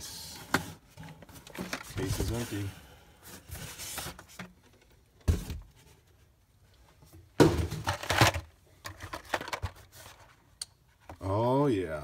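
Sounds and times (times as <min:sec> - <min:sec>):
packages rustling and clattering: 0:00.3 - 0:06.3, 0:07.4 - 0:10.4.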